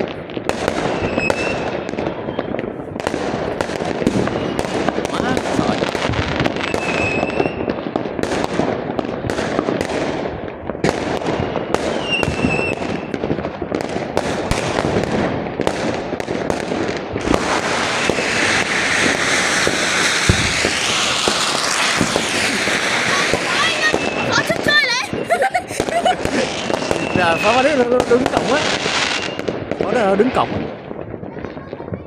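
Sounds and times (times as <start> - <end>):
fireworks bangs: 0.0 - 32.0
fireworks crackle: 0.0 - 32.0.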